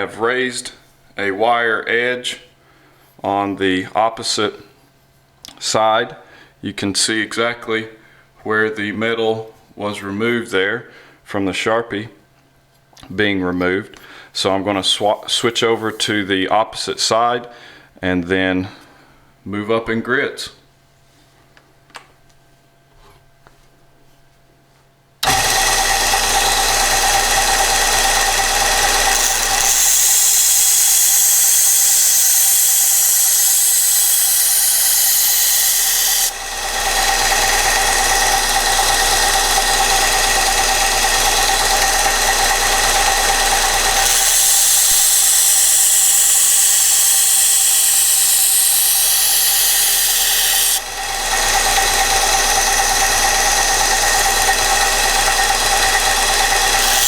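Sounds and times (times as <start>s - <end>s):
belt sander motor hum: 25.2s - 57.0s
knife grinding on sanding belt: 25.3s - 57.0s.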